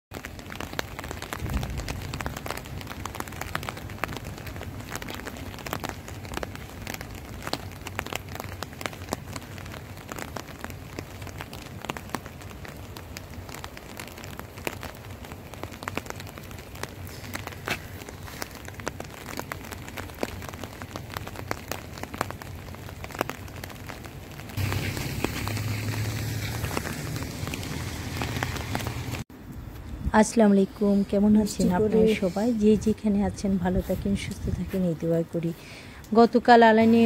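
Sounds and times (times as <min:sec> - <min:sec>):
raindrops ticking close: 0:00.1 - 0:29.3
steady rain falling: 0:00.1 - 0:29.3, 0:30.8 - 0:37.0.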